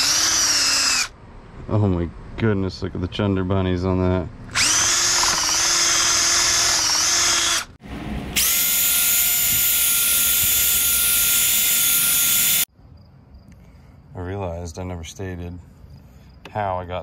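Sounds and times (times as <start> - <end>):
power drill spinning wire brush: 0.0 - 1.1, 4.6 - 7.8, 8.4 - 12.7.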